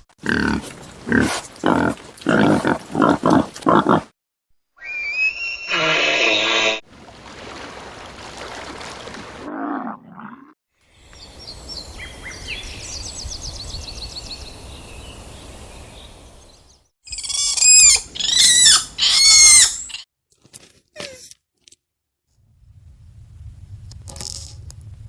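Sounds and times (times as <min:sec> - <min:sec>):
faint high bird chirps: 0:04.8 - 0:05.9, 0:11.0 - 0:20.0
loud quavering animal calls: 0:04.8 - 0:06.8, 0:17.1 - 0:20.0.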